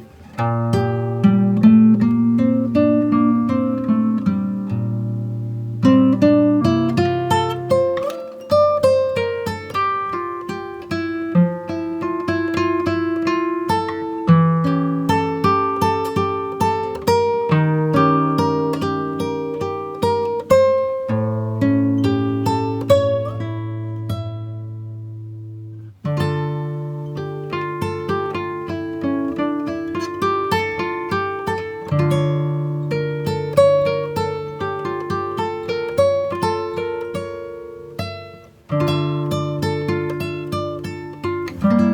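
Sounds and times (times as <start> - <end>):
acoustic guitar picking: 0.0 - 41.9.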